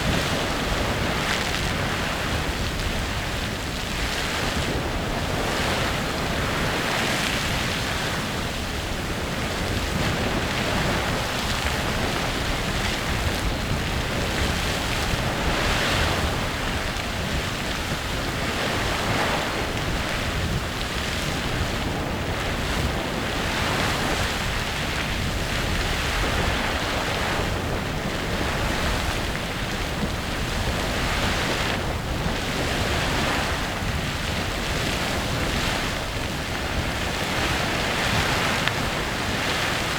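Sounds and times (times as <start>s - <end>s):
geyser water and steam rushing: 0.0s - 39.9s.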